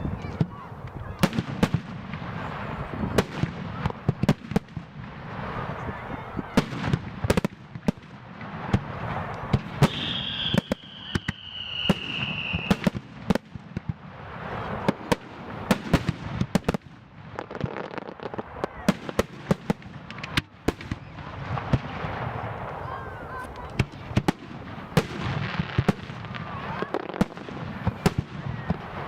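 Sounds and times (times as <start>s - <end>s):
falling firework whistle: 9.5s - 13.0s.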